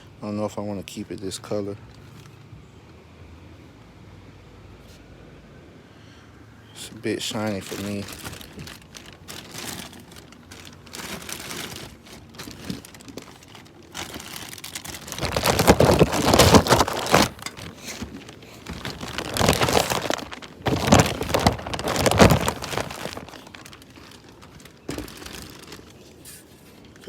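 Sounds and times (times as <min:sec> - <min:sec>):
packaging crinkling and rustling: 0:07.2 - 0:27.0.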